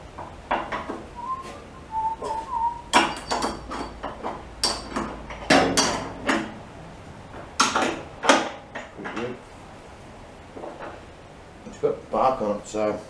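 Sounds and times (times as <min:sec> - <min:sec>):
wood and metal knocks: 0:00.2 - 0:01.5, 0:02.2 - 0:06.6, 0:07.3 - 0:09.3
short high squeaks: 0:01.2 - 0:03.4.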